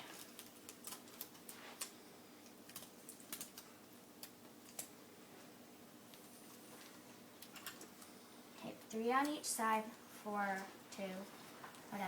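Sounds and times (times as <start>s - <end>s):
hands working with tape and paper: 0.0s - 5.0s.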